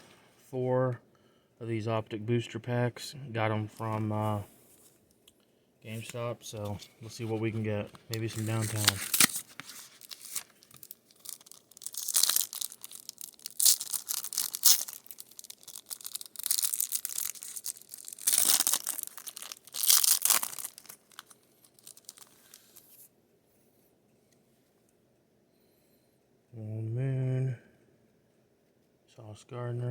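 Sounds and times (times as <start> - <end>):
foil wrapper tearing and crinkling: 8.1 - 22.9.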